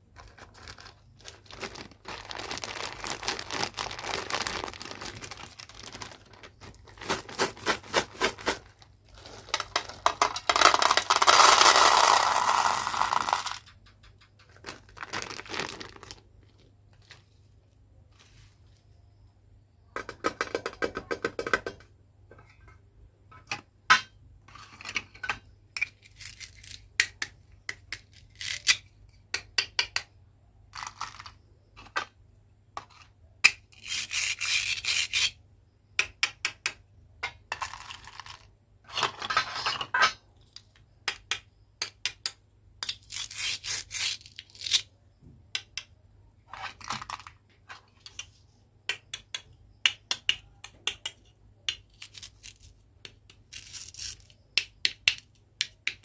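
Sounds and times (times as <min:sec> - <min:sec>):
small hard items clattering: 0:00.1 - 0:17.2, 0:37.5 - 0:40.6, 0:46.5 - 0:48.2.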